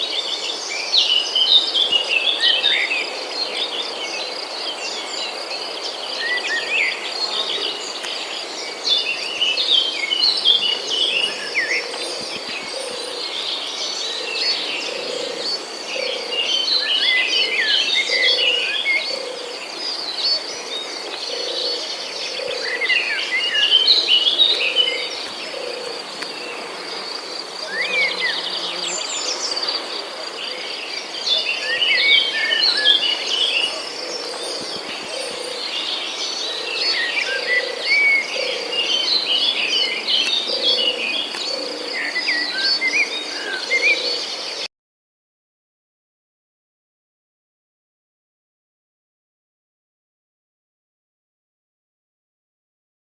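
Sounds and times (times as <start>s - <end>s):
high insect drone: 2.8s - 44.1s
birds chirping: 4.3s - 44.7s.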